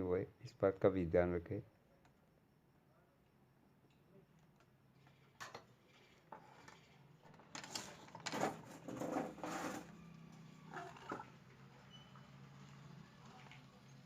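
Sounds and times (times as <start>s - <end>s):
scraping and rustling: 5.0s - 10.1s.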